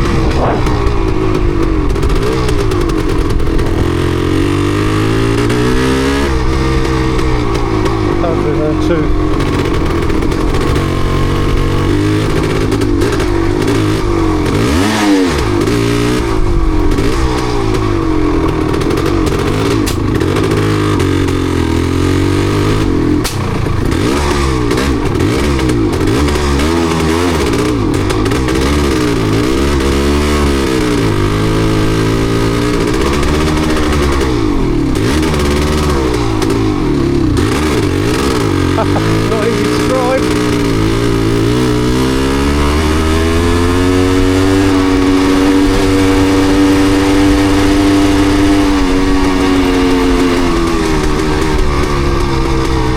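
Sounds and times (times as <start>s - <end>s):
motorcycle engine revving misfiring: 0.0s - 52.9s.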